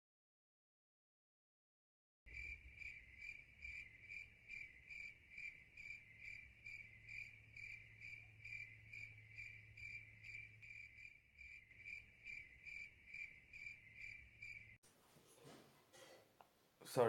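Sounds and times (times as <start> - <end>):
cricket chirping: 2.3 - 14.8
low hum: 2.3 - 14.8.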